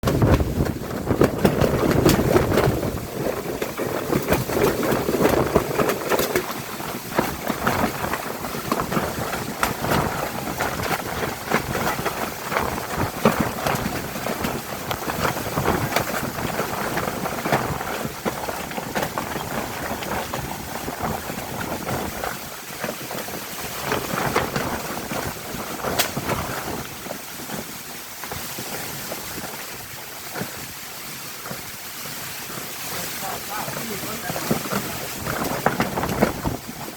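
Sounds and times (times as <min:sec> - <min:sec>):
sharp crackles: 0:00.0 - 0:36.9
wind buffeting microphone: 0:00.0 - 0:36.9.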